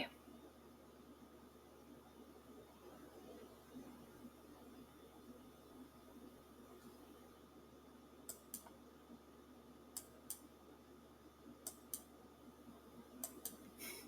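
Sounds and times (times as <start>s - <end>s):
faint sharp clicks: 11.6s - 12.1s, 13.2s - 13.6s.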